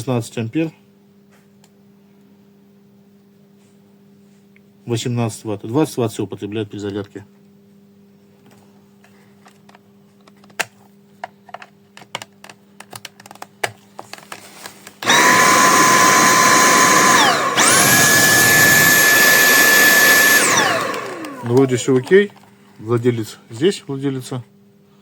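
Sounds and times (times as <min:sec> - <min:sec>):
cordless vacuum motor whine: 0:15.0 - 0:22.2.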